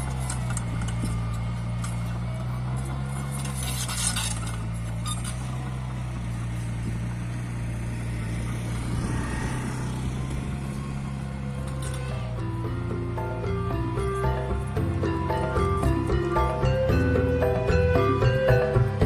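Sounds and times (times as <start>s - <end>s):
metallic clinking and clanking: 0.0s - 6.8s, 11.2s - 15.8s
diesel engine running: 0.0s - 19.0s.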